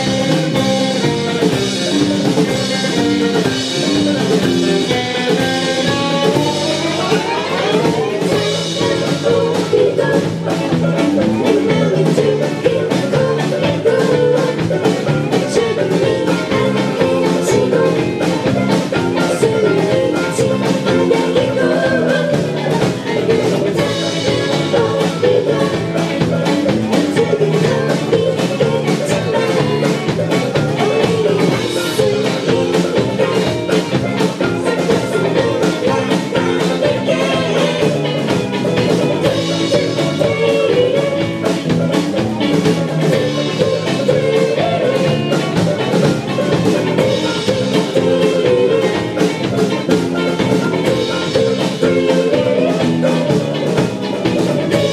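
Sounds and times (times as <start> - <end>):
person singing: 0.0 - 54.9
rock band playing live: 0.0 - 54.9.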